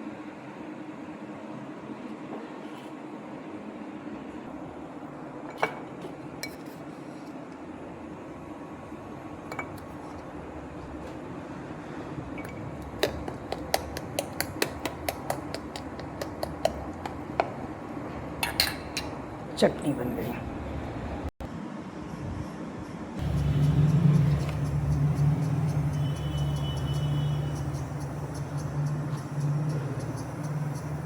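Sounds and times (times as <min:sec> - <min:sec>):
steady low hum: 0:23.2 - 0:31.0.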